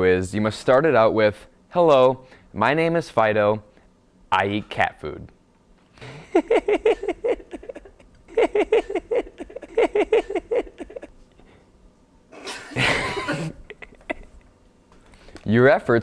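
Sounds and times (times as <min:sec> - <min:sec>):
man's breathy hissing burst: 0:06.0 - 0:06.4.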